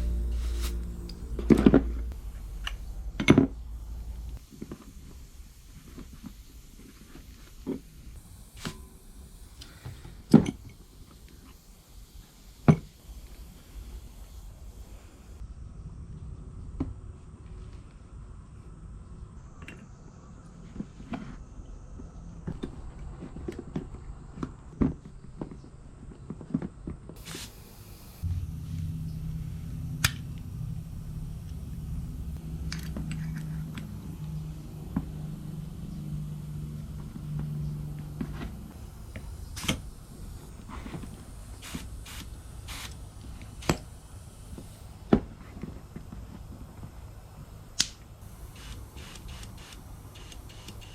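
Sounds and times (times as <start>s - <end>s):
steady low hum: 0.0s - 26.0s, 27.2s - 50.9s.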